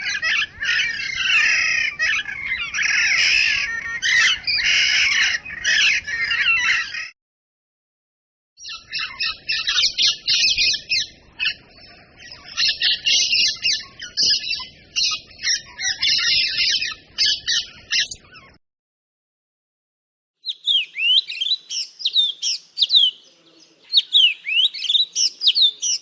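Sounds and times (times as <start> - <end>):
bird chirping and warbling: 20.4 - 26.0.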